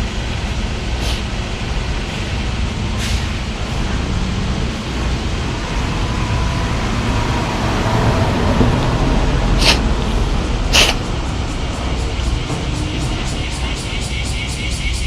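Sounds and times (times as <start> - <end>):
low rumble: 0.0 - 15.0
cat sneezing: 9.6 - 9.8, 10.7 - 11.0.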